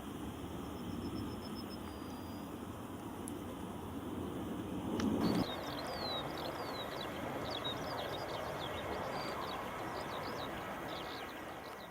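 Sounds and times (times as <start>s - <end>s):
steady background noise: 0.0s - 11.9s.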